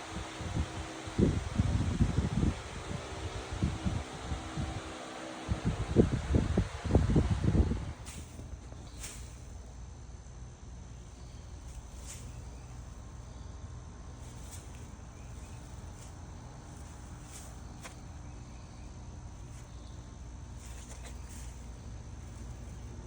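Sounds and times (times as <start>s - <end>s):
gas heater burning: 0.0s - 23.0s.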